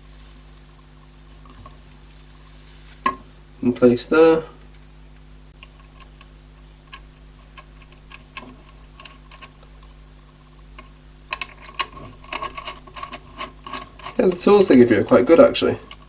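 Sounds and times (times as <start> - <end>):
small metallic clicks and taps: 10.8 - 14.5.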